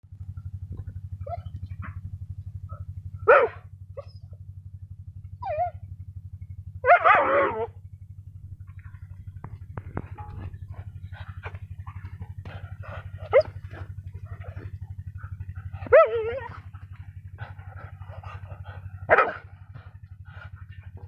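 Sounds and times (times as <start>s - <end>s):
rhythmic mechanical chugging: 0.1s - 21.0s
dog whining yelp: 1.2s - 1.6s, 3.3s - 4.4s, 5.4s - 5.8s, 13.2s - 13.8s, 15.8s - 16.7s
dog barking: 3.2s - 4.1s, 6.8s - 7.7s, 13.2s - 16.8s, 18.2s - 19.6s.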